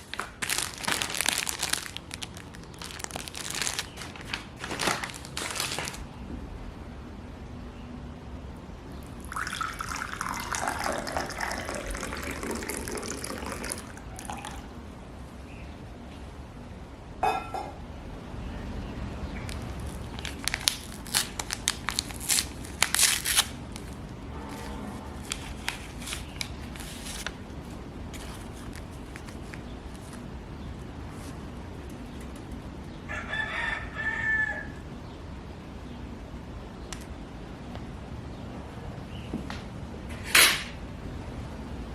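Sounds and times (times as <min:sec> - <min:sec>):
liquid pouring: 0:09.1 - 0:14.7
rooster crowing: 0:33.0 - 0:34.9.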